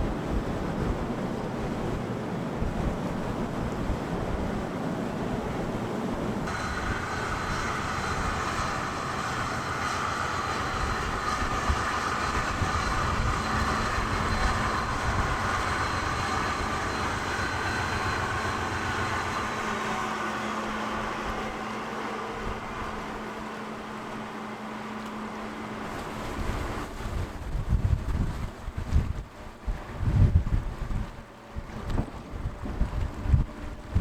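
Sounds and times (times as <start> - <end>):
wind buffeting microphone: 0.0 - 23.4, 25.7 - 34.0
mechanical drone: 6.3 - 27.2
thin high whine: 6.4 - 27.3.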